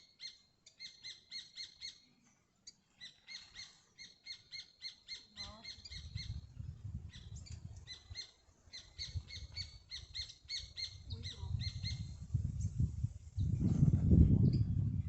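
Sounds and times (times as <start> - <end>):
bird chirping: 0.0 - 6.5.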